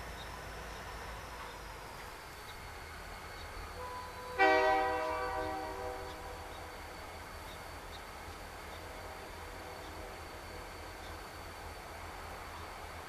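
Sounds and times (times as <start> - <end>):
locomotive horn blast: 3.8 - 6.4.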